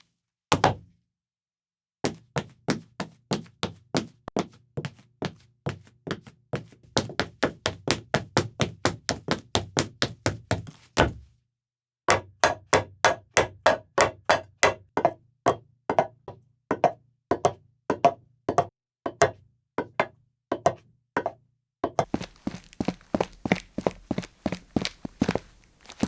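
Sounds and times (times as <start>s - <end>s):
knocking footsteps: 22.0s - 26.0s.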